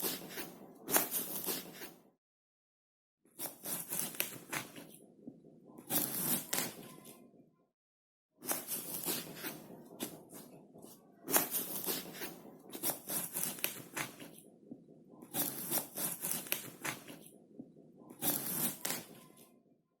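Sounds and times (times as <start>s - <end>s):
knife cutting crisp fruit: 18.2s - 19.1s.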